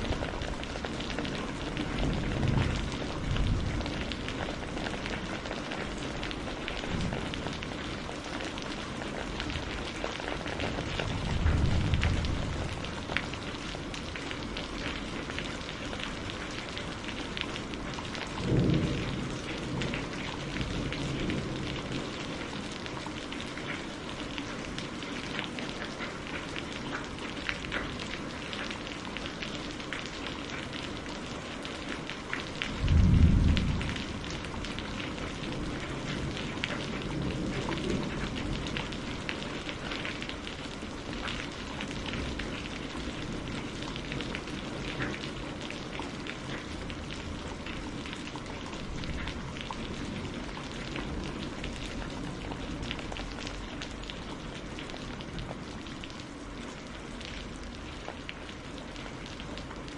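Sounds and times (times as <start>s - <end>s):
low rumbles of thunder: 0.0s - 23.8s, 32.2s - 55.6s
steady rain: 0.0s - 59.9s.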